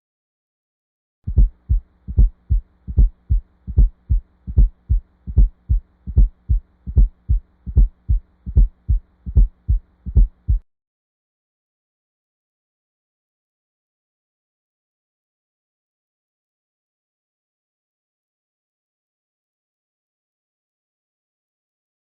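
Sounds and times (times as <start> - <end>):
faint steady hum: 1.3 - 10.6
heartbeat through stethoscope: 1.3 - 10.6.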